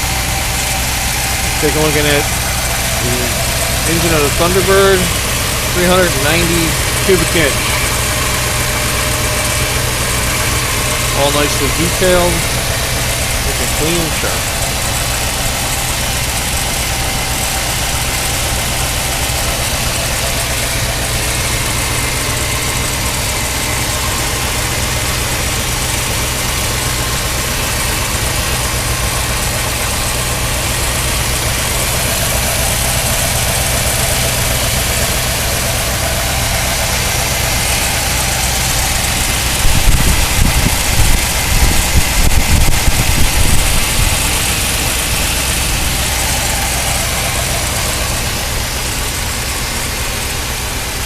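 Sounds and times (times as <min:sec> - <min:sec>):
car engine idling: 0:00.0 - 0:51.0
loud low thumps: 0:35.9 - 0:50.6.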